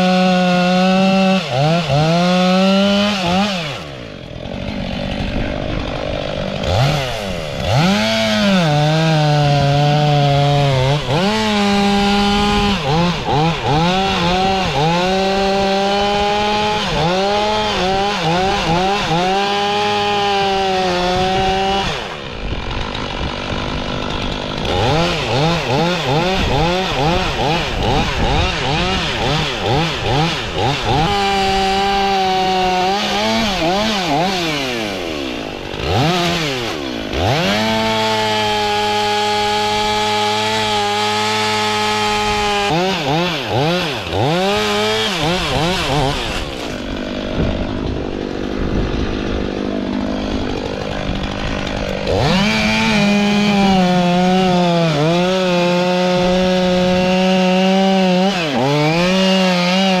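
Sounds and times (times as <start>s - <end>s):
chainsaw revving and cutting wood: 0.0s - 60.0s.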